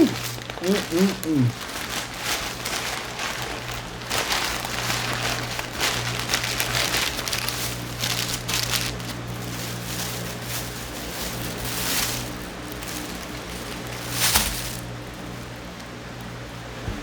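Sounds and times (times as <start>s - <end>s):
person chewing and smacking: 0.0s - 1.6s
low steady hum: 0.0s - 17.0s.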